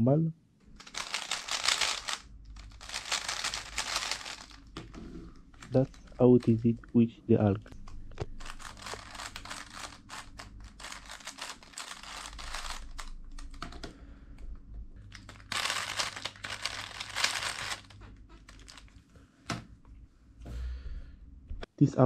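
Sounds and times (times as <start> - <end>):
speed cube clicking turns: 0.8 - 4.7, 7.8 - 13.9, 15.2 - 18.8.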